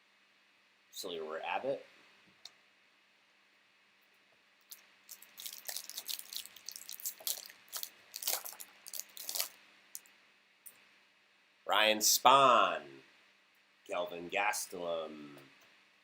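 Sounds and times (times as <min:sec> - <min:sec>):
plastic wrapper crinkling: 0:04.6 - 0:10.1.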